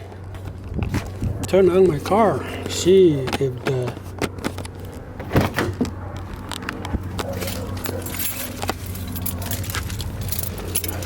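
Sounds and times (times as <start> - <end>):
steady low hum: 0.0 - 11.0
car keys jangling: 5.7 - 11.0.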